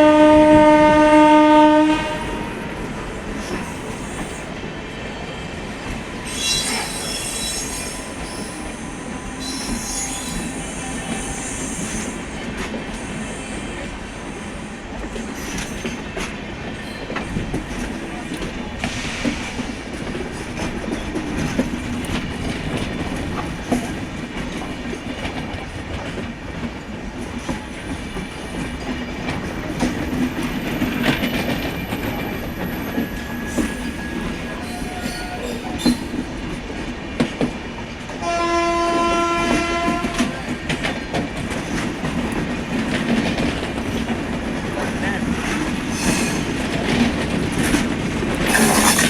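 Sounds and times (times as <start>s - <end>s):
train horn blast: 0.0s - 2.9s, 38.2s - 40.4s
train rumbling: 0.0s - 49.0s
rail-joint clicks: 5.8s - 38.2s, 39.4s - 49.0s.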